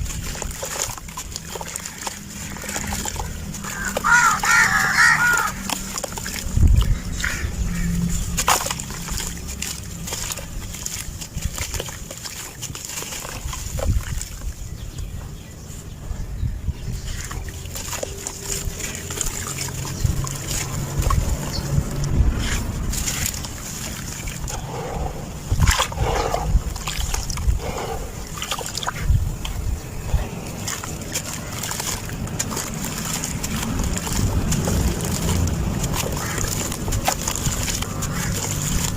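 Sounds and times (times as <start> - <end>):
dry cement clumps crumbling: 28.4 - 38.9.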